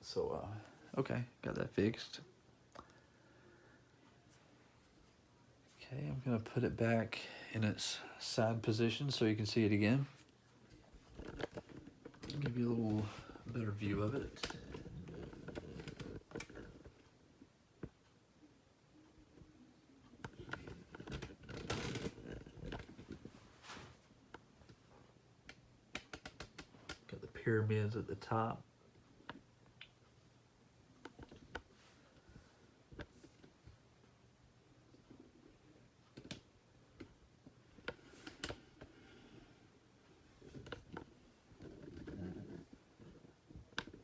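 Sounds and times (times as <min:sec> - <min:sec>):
rustling scrape: 0:23.2 - 0:24.1.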